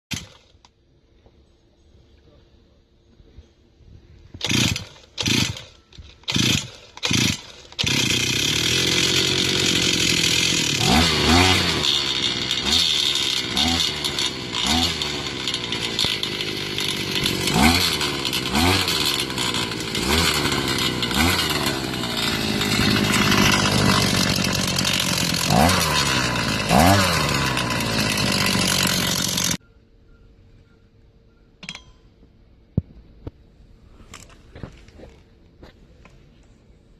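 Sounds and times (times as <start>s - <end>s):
knocking engine revving: 6.3s - 29.6s.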